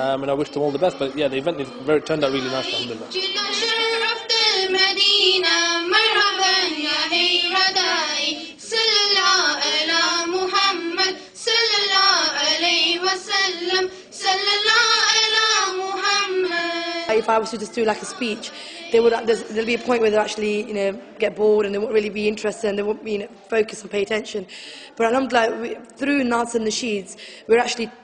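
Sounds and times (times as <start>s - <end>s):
child singing: 0.3s - 20.3s.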